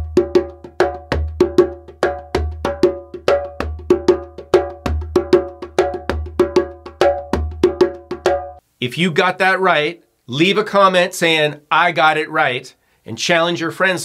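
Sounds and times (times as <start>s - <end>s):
djembe played by hand: 0.0s - 8.6s.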